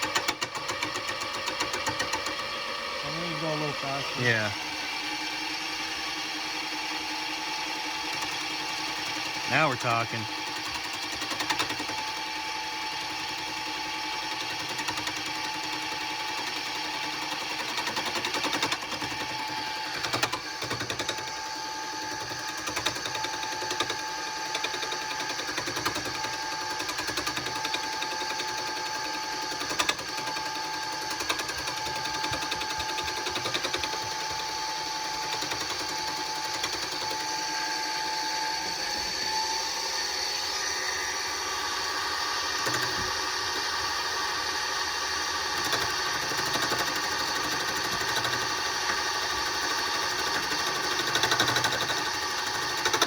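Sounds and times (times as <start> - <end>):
wood lathe motor whine: 0.0 - 53.0
tool scraping spinning wood: 29.2 - 39.4.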